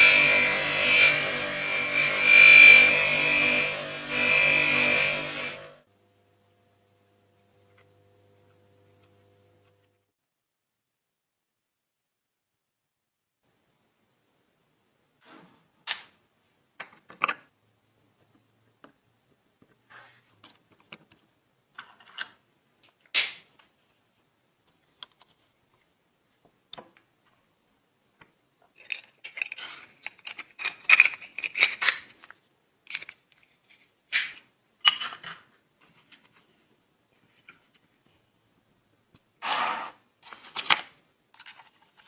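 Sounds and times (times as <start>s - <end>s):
metal parts and tools clicking: 28.7s - 32.3s.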